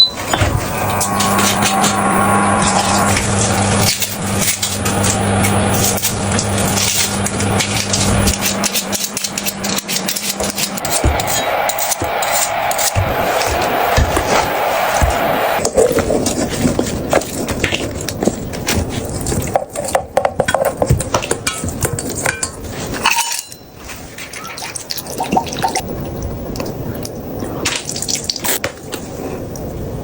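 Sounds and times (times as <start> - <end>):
dishes clicking and knocking: 3.8 - 25.8
water running at sink: 20.8 - 28.7.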